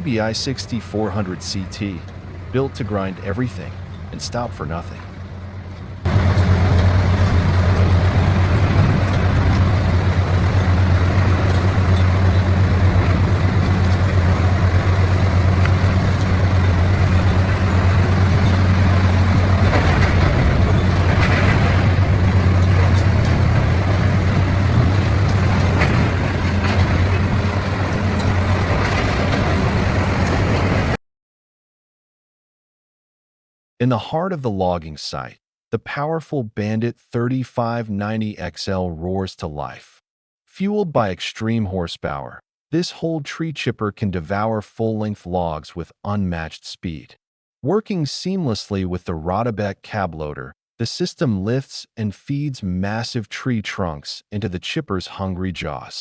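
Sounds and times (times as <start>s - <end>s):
diesel engine drone: 0.0s - 31.0s
rough grinding noise: 2.0s - 31.0s.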